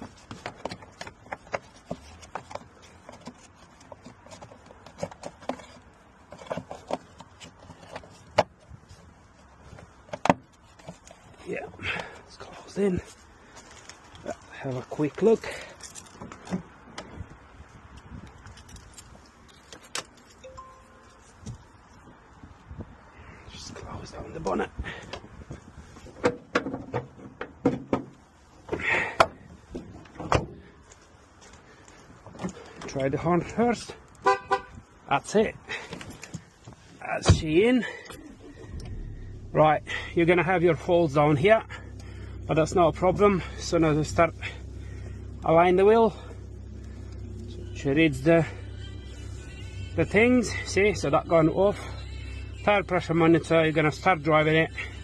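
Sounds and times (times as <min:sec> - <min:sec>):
car bonnet clicks and knocks: 0:26.2 - 0:29.4.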